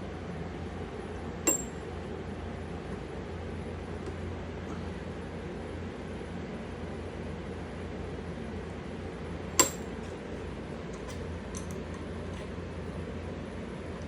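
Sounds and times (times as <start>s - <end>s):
steady low hum: 0.0s - 14.0s
sharp metallic clink: 1.5s - 1.8s, 9.6s - 9.9s.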